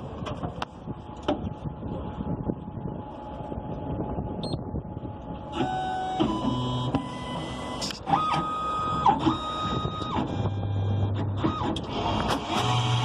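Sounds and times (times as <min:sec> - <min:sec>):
key-cutting machine whine: 0:05.6 - 0:13.0.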